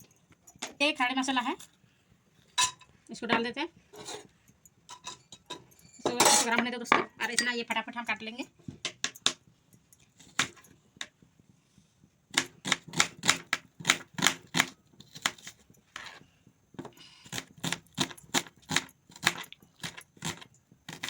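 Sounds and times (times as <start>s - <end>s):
knife chopping: 12.4s - 15.6s.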